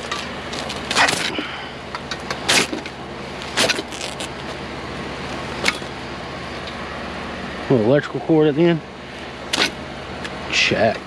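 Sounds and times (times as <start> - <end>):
scrap metal snapping and clanking: 0.0 - 4.6, 5.5 - 5.9
vehicle engine idling: 0.0 - 11.0.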